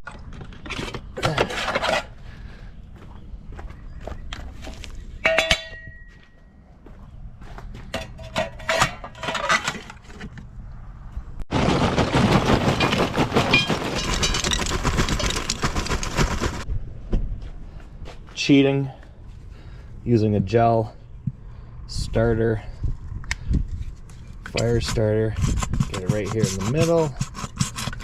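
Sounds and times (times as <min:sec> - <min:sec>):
charcoal lumps rattling: 0:11.5 - 0:16.6.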